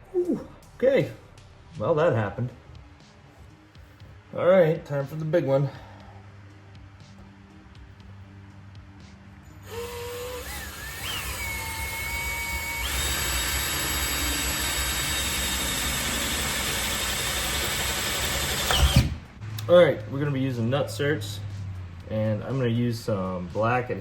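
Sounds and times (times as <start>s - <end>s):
cordless drill boring metal: 9.6s - 19.2s.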